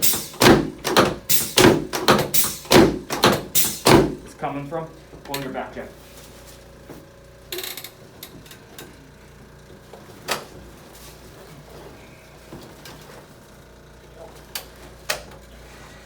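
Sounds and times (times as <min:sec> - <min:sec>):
faint room hum: 0:00.0 - 0:16.0
treatment table clicks and knocks: 0:00.1 - 0:04.2.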